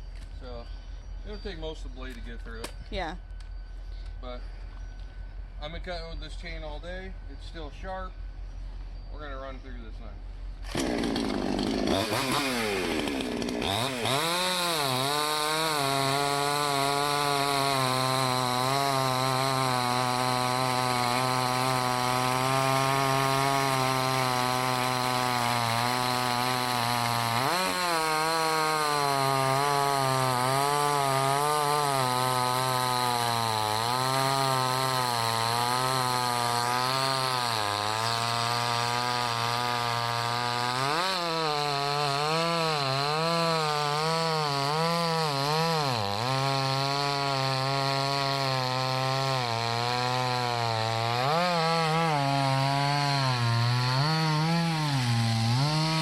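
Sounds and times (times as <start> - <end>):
chainsaw cutting log: 10.6 - 56.0.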